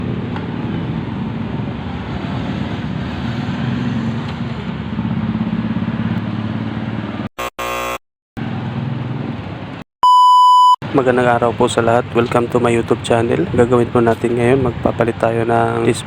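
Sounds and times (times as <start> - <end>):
brief buzzy tone: 7.4 - 8.0, 10.0 - 10.8.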